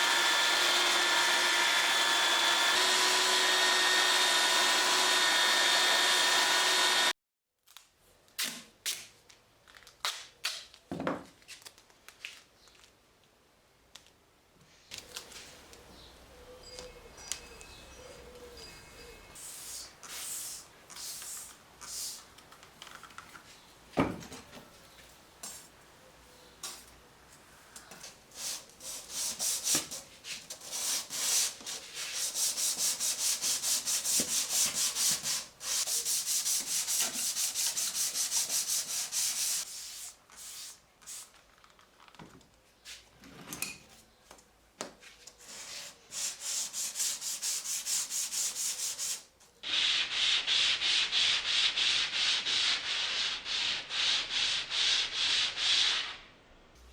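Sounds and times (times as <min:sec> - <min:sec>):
sandpaper rubbing strokes: 0:19.4 - 0:22.3, 0:28.3 - 0:41.3, 0:45.4 - 0:56.3.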